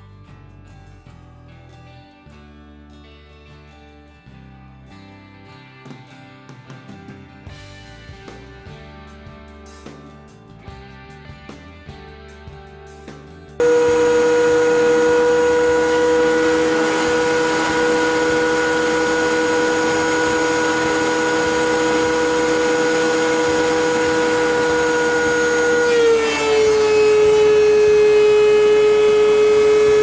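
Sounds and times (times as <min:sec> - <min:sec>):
quiet guitar music: 0:00.0 - 0:30.0
power tool motor whining: 0:13.6 - 0:30.0.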